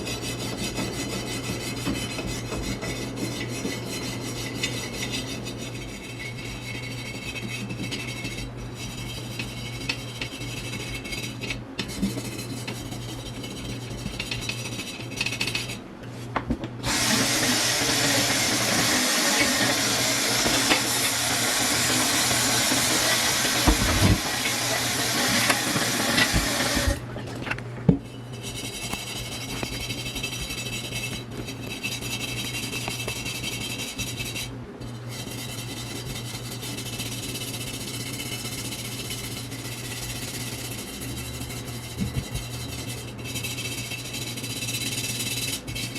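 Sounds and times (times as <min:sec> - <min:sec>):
steady low hum: 0:00.0 - 0:45.9
hose spraying water on metal: 0:16.8 - 0:27.0
rubbing sounds: 0:16.9 - 0:27.0.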